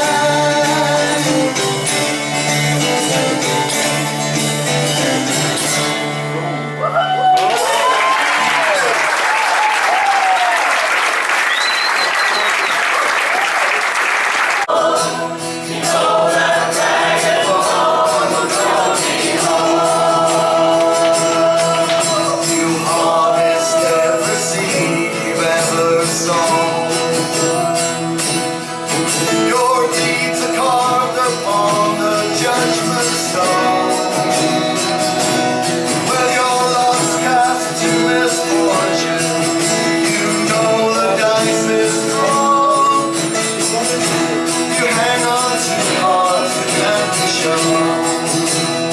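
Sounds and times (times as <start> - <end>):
voices singing: 14.6 - 48.9.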